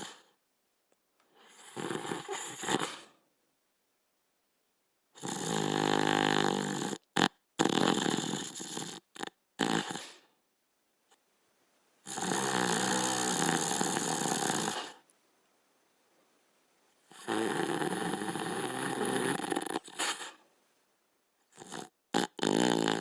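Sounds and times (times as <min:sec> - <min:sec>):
dog snoring: 0:00.0 - 0:00.4, 0:01.4 - 0:03.2, 0:05.1 - 0:10.3, 0:12.0 - 0:15.0, 0:17.0 - 0:20.4, 0:21.4 - 0:23.0.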